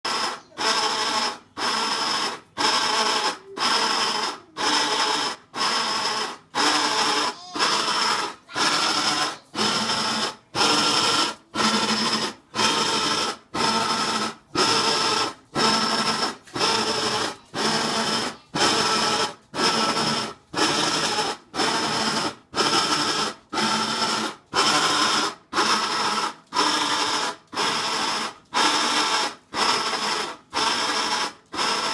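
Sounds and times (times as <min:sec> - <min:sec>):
washing machine rhythmic mechanical noise: 0:00.0 - 0:31.9.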